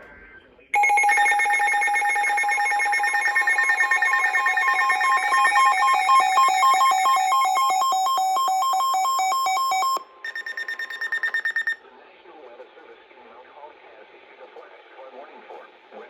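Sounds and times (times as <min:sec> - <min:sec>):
weather radio alarm tones: 0:00.8 - 0:11.8.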